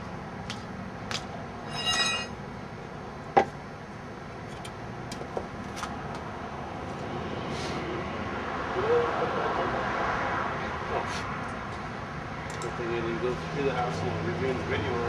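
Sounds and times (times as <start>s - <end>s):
metallic ring: 1.6s - 2.4s.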